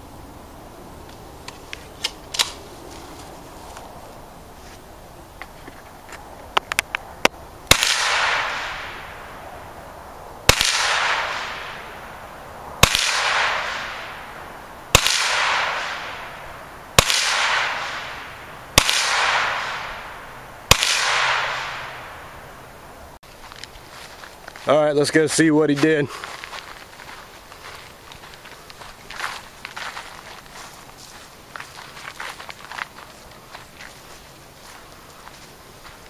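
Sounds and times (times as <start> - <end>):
gunshots with echo: 7.7 - 9.3, 10.5 - 12.0, 12.8 - 16.4, 17.0 - 22.4.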